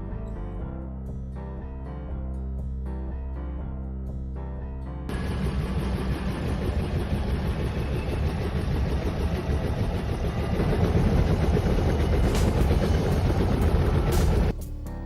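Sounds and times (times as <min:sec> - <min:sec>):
low fluttering engine rumble: 0:05.1 - 0:15.0.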